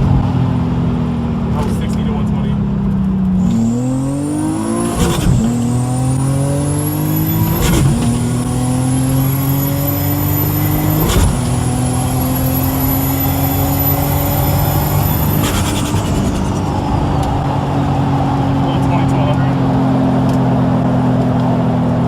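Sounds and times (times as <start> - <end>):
car engine accelerating hard: 0.0 - 22.0
turbo whine: 3.4 - 17.6.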